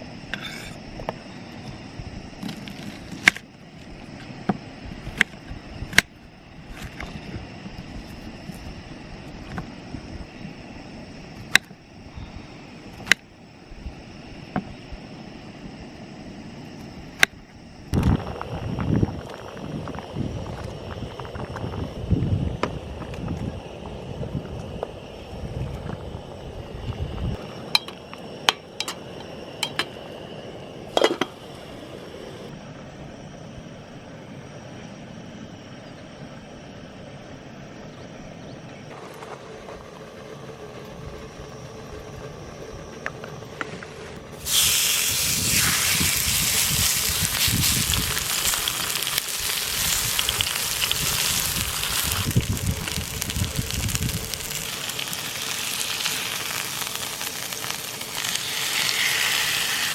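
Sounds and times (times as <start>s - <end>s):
food sizzling in hot pan: 44.4s - 59.9s.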